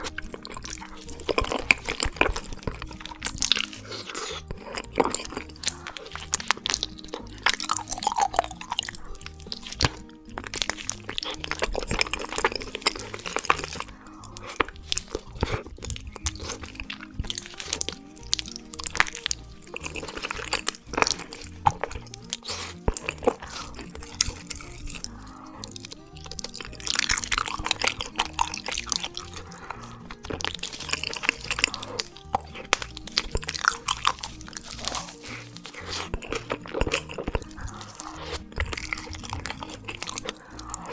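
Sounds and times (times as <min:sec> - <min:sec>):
background music with bass line: 0:00.0 - 0:40.9
biting and chewing: 0:00.0 - 0:40.9.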